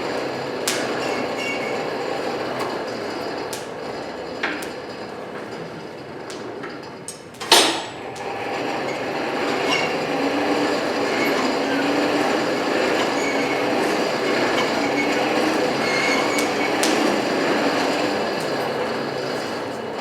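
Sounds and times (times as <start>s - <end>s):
sharp metal clank: 7.4s - 8.0s.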